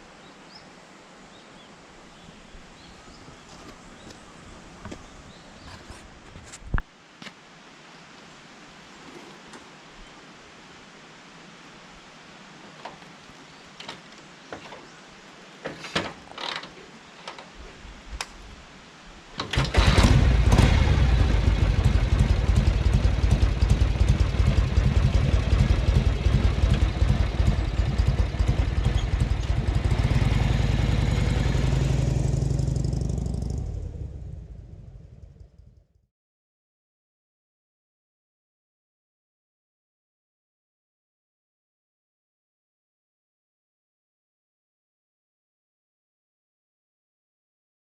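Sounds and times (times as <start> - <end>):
motorcycle engine starting and running: 19.4 - 36.0.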